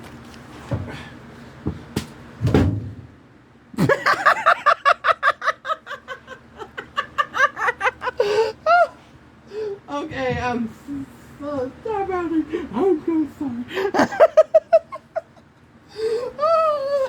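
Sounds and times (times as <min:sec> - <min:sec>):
man giggling laughter: 0:03.8 - 0:09.0, 0:13.8 - 0:15.5.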